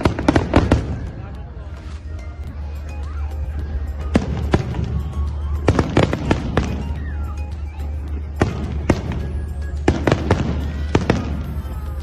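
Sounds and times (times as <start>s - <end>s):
fireworks bangs and pops: 0.0s - 2.1s, 4.0s - 7.1s, 8.2s - 12.0s
music playing: 0.0s - 12.0s.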